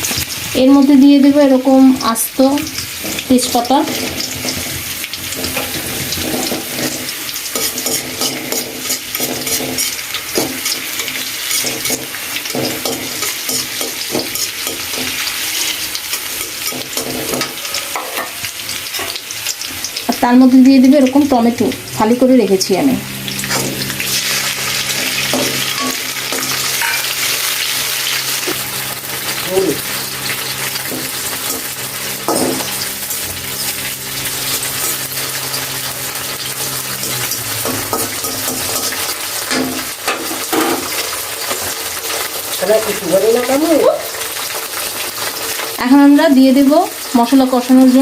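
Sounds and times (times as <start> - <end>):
tomato sizzling in hot oil: 0.0 - 48.0
spatula scraping pan: 2.8 - 19.3, 23.1 - 42.9.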